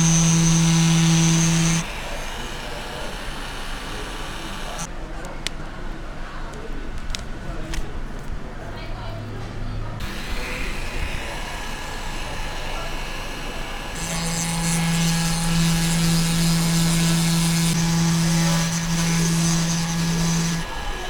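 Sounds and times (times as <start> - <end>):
rotary grinder grinding metal: 0.0 - 4.9, 10.0 - 21.0.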